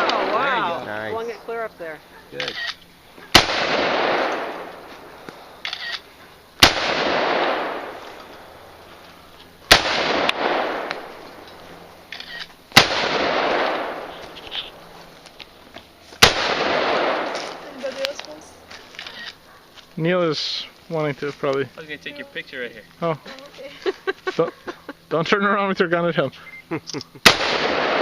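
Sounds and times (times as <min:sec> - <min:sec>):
rifle shots with long echo: 0:03.3 - 0:05.2, 0:06.6 - 0:08.6, 0:09.6 - 0:11.5, 0:12.7 - 0:14.2, 0:16.2 - 0:17.7, 0:27.2 - 0:28.0.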